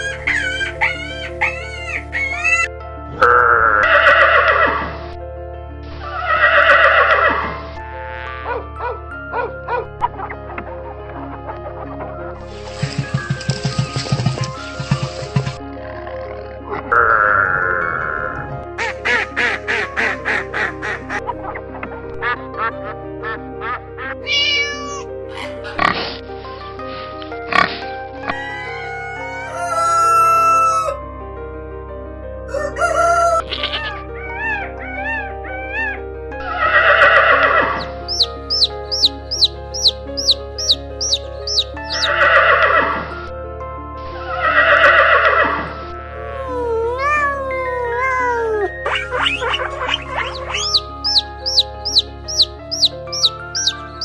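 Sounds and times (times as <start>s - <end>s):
background music: 0.0s - 54.0s
horse neighing: 41.9s - 42.8s
duck quacking: 49.0s - 53.8s.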